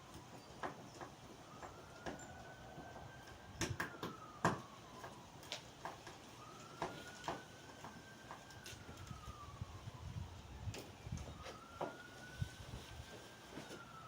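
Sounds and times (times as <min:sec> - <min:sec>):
faint siren wailing: 0:00.0 - 0:14.0.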